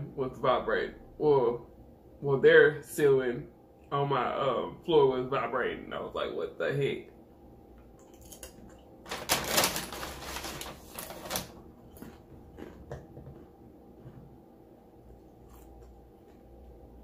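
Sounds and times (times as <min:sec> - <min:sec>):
loud rustling and crackling: 0:09.1 - 0:11.6.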